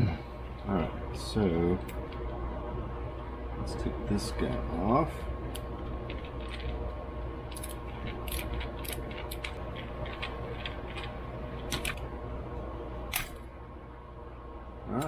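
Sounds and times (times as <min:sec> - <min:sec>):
steady low hum: 0:00.0 - 0:15.0
small metal parts clicking: 0:07.5 - 0:11.1.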